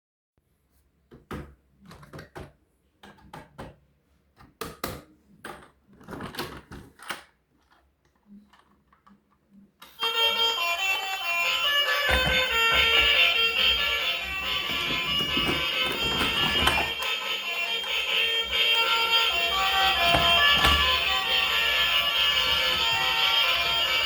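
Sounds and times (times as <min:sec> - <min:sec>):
music: 0:09.9 - 0:24.0
toy packaging clicks and rustles: 0:10.8 - 0:24.0.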